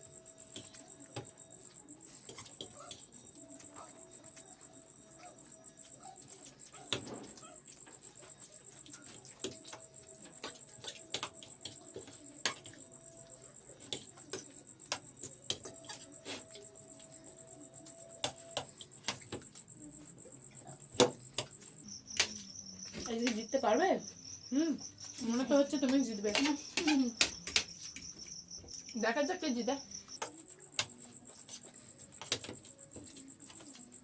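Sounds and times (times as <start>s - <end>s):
food clicking on plates: 25.8s - 28.1s.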